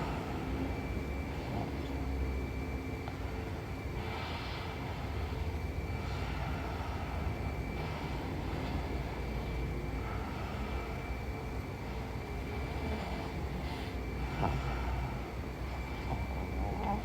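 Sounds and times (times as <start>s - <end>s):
woman snoring: 12.5s - 15.2s, 15.8s - 17.0s.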